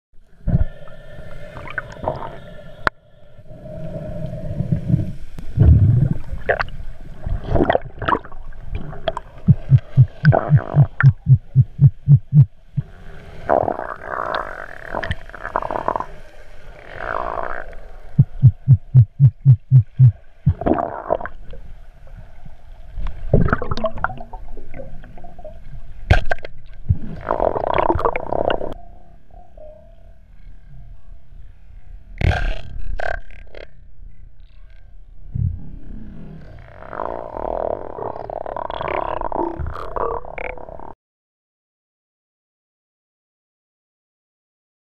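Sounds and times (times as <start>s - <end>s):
muffled underwater rushing water: 0.3s - 26.1s
rapid low thumps: 9.5s - 12.5s, 18.2s - 20.7s.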